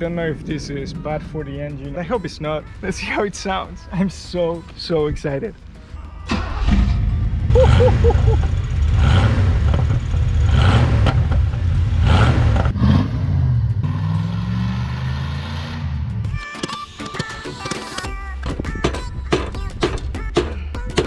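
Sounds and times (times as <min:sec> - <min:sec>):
car engine revving and idling: 0:00.0 - 0:16.4.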